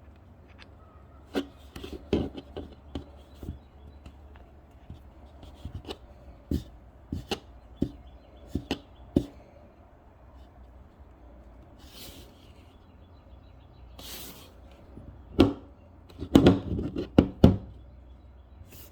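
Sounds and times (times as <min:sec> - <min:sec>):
handling rustle: 0:10.2 - 0:12.8.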